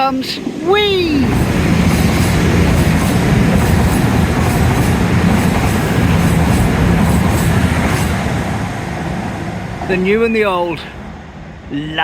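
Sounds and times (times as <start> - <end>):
train rushing past: 0.0 - 12.0
wheels clattering over rail joints: 0.9 - 8.6.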